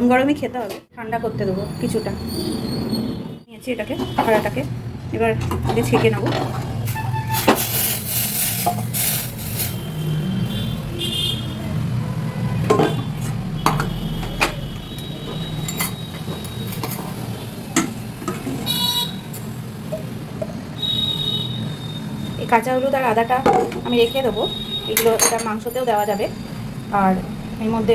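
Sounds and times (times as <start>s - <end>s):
steel utensils clinking on pot: 12.7s - 14.0s, 15.6s - 18.7s, 24.9s - 26.3s.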